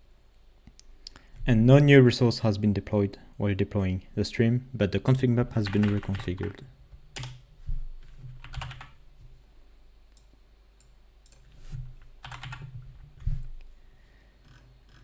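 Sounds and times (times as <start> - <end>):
low steady hum: 0.0 - 15.0
keyboard keystrokes and clicks: 5.7 - 6.6, 8.4 - 9.0, 10.2 - 11.5, 12.2 - 12.8.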